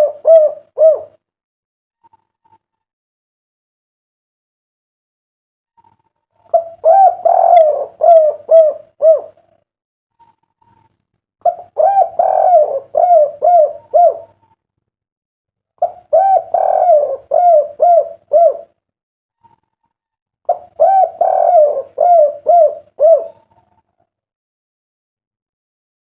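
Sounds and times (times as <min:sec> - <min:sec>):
dove cooing: 0:00.0 - 0:01.2, 0:06.4 - 0:09.6, 0:11.4 - 0:14.5, 0:15.8 - 0:18.8, 0:20.5 - 0:24.0.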